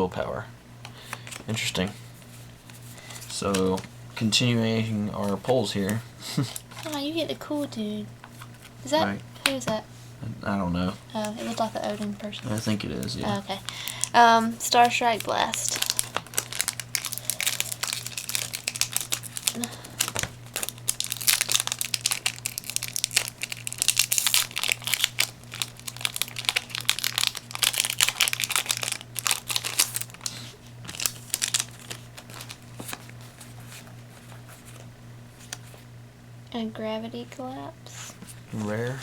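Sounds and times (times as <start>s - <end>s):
foil wrapper crinkling: 11.1s - 35.8s.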